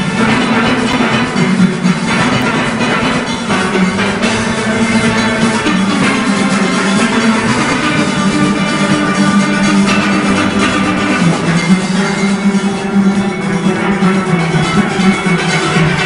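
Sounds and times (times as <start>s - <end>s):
steelband playing: 0.0s - 16.0s.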